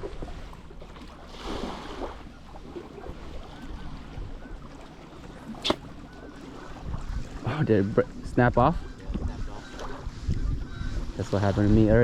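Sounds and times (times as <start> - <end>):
water lapping against boat hull: 0.0 - 12.0
wind rumbling on microphone: 0.0 - 12.0.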